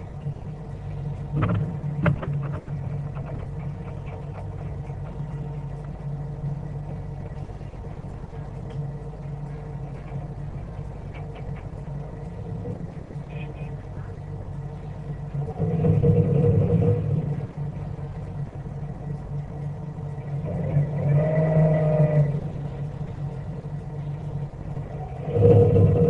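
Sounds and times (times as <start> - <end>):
boat engine droning: 0.0 - 26.0.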